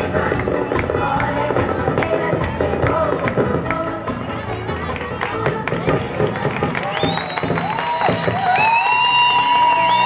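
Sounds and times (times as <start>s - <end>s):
music playing: 0.0s - 10.0s
crowd cheering: 6.5s - 10.0s
high held whoops: 6.8s - 10.0s.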